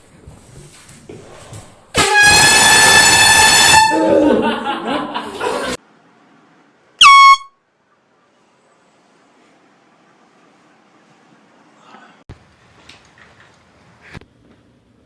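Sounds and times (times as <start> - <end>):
air horn blast: 2.0 - 4.2, 7.0 - 7.5.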